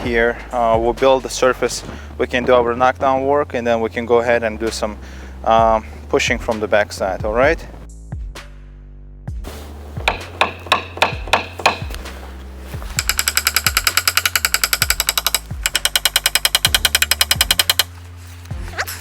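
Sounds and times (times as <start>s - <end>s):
background music: 0.0s - 19.0s
tool tapping sheet metal: 10.0s - 12.1s, 12.9s - 17.9s.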